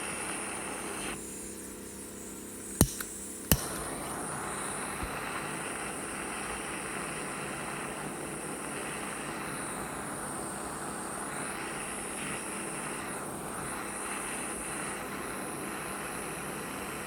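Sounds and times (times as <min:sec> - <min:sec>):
butane torch hissing: 0:00.0 - 0:17.0
sharp clicks: 0:02.8 - 0:04.3.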